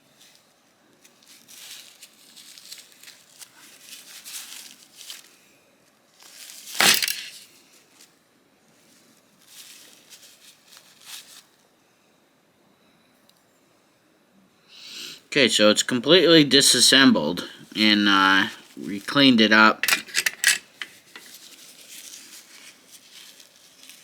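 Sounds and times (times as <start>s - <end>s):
paper towel rustling and crinkling: 1.0s - 5.4s, 6.1s - 8.1s, 8.8s - 11.6s, 20.6s - 24.0s
paper towel crumpling: 1.1s - 5.4s, 9.4s - 11.6s, 20.9s - 24.0s.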